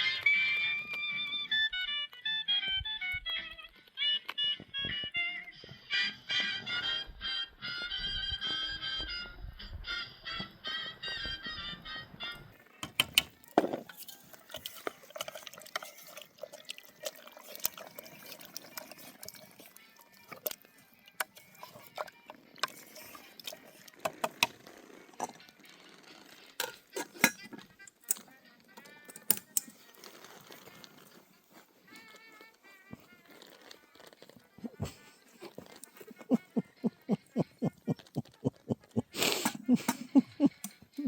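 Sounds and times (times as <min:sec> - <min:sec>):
music: 0:00.0 - 0:41.0
clinking pots and utensils: 0:12.8 - 0:20.6, 0:26.6 - 0:28.2
liquid pouring and dripping: 0:13.4 - 0:24.0.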